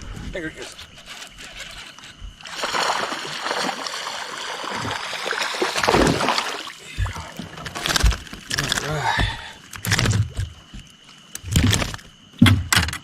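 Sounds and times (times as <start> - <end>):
water splashing and churning: 2.3 - 10.2.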